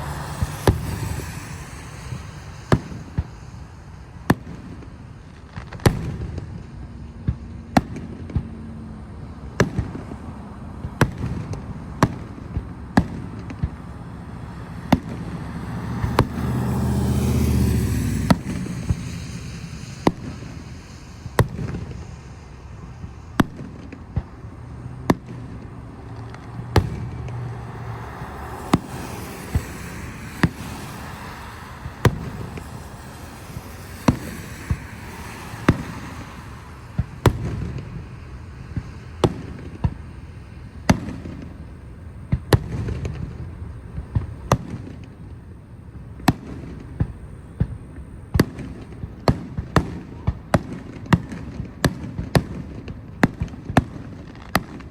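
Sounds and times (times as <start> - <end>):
fireworks banging: 0.0 - 54.9
steady background rumble: 0.0 - 54.9.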